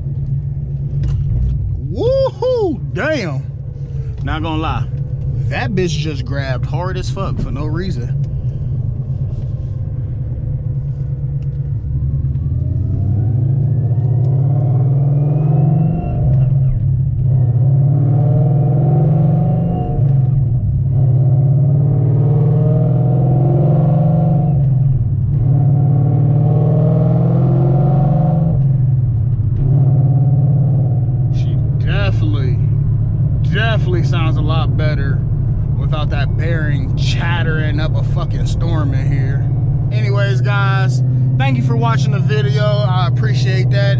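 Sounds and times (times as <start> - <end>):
car engine accelerating: 0.0 - 43.9.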